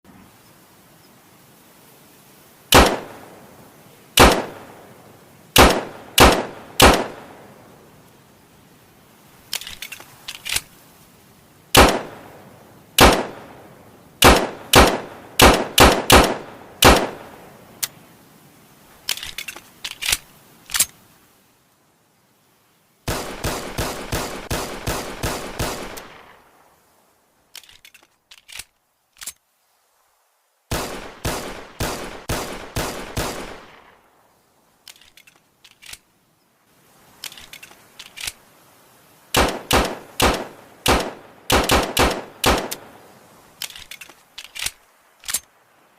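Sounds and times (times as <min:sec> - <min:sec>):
pistol shots: 0:02.7 - 0:03.2, 0:04.2 - 0:04.7, 0:05.6 - 0:07.3, 0:11.8 - 0:12.3, 0:13.0 - 0:13.5, 0:14.2 - 0:17.3, 0:23.1 - 0:26.4, 0:30.7 - 0:33.9, 0:39.4 - 0:42.9
quiet pistol clicks: 0:39.4 - 0:42.9.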